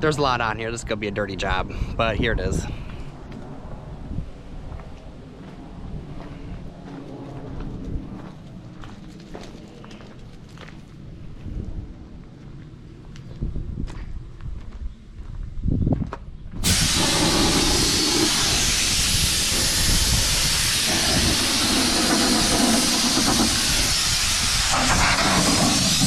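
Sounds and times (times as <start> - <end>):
compressed air hissing from hose: 16.6 - 26.0.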